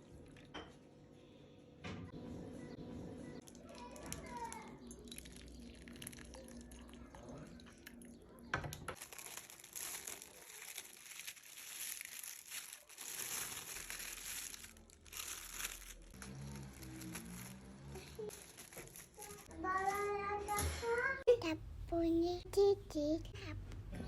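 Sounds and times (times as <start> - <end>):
wrapper crinkling: 3.5 - 6.7, 9.0 - 20.1.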